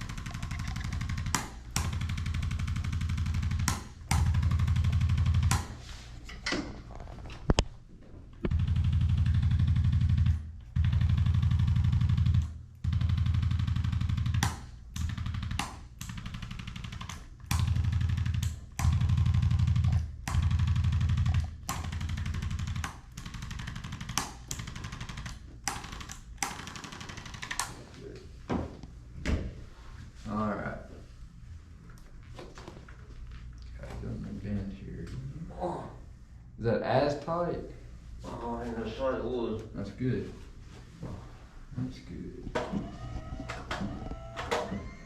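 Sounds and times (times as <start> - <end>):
electric massager hammering: 0.0 - 5.9, 8.4 - 27.8, 42.5 - 45.0.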